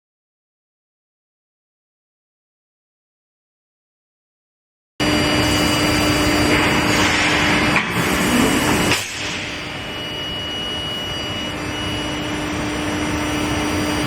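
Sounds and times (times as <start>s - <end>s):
induction hardening machine humming: 5.0s - 14.0s.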